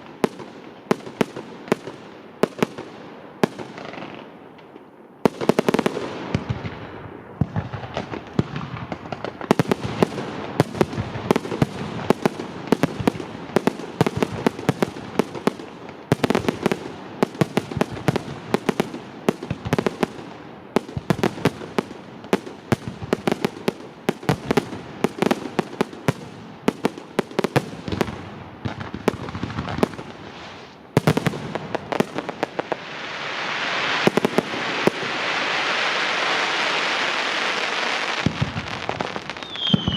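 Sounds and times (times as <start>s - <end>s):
fireworks bangs and booms: 0.0s - 39.9s
rising hiss: 32.4s - 39.6s.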